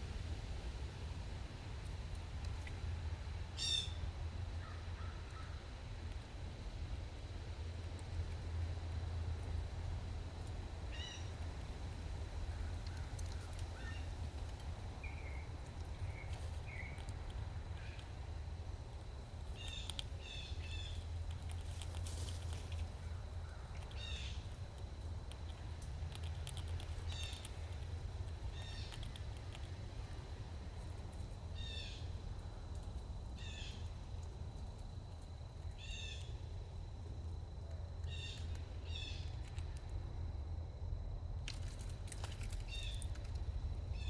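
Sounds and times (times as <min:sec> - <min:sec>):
steady low hum: 0:00.0 - 0:44.0
soft bird chirps: 0:15.0 - 0:17.1, 0:19.5 - 0:21.1, 0:22.2 - 0:24.5, 0:27.0 - 0:27.8, 0:28.5 - 0:29.2, 0:38.0 - 0:39.6, 0:42.5 - 0:43.2.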